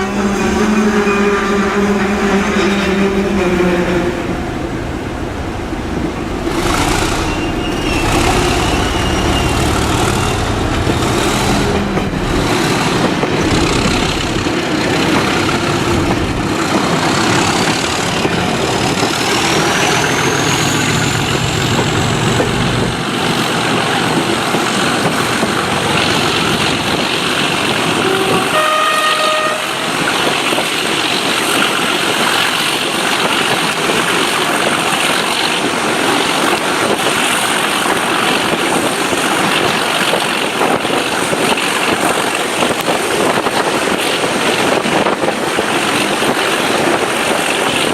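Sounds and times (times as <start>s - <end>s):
locomotive horn toot: 0.0s - 4.5s, 28.0s - 30.0s
diesel locomotive engine working hard: 0.0s - 47.9s.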